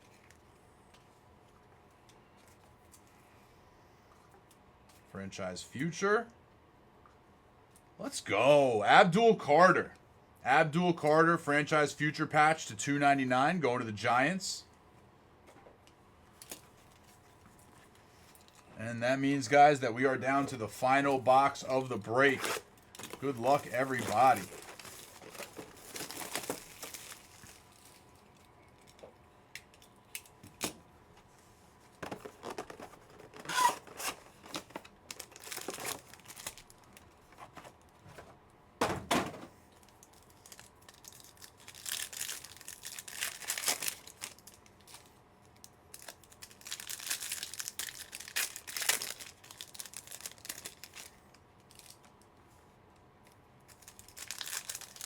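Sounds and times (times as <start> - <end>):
foil packs crinkling: 19.7 - 28.2, 32.0 - 38.0, 39.8 - 52.1, 53.7 - 55.0
sharp rip of wrapping: 22.2 - 22.6, 33.5 - 34.2.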